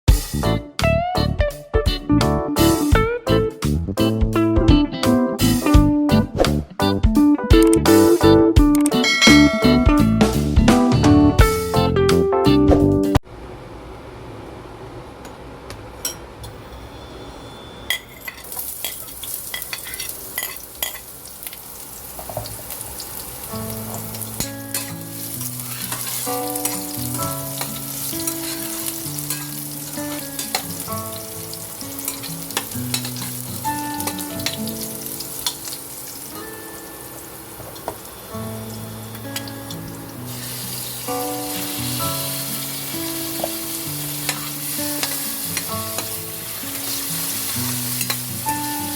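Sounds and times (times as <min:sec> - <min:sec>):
food sizzling in hot oil: 0:17.9 - 0:48.9.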